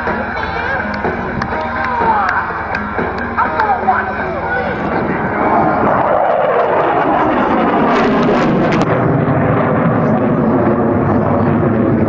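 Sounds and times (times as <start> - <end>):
fighter jet roar: 0.0 - 12.0.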